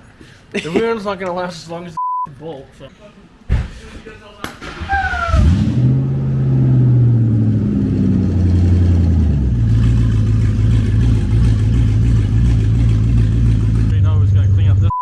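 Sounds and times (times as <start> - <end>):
car engine running: 5.7 - 14.9.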